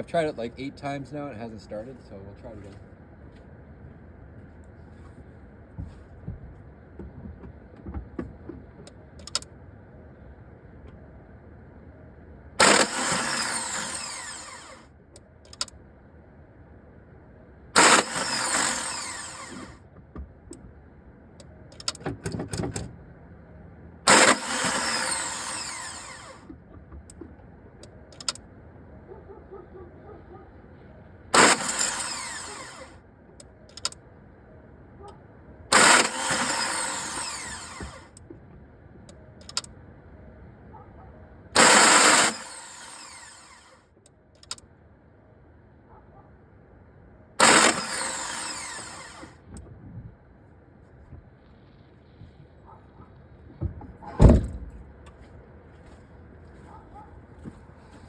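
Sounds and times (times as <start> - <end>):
starter motor whining: 12.6 - 14.9, 17.8 - 19.9, 24.1 - 27.1, 31.4 - 33.0, 35.7 - 38.2, 41.6 - 43.8, 47.4 - 49.5
small clicks: 15.1 - 15.8, 21.4 - 22.0, 27.0 - 28.4, 33.4 - 34.0, 39.1 - 39.7, 44.3 - 44.6.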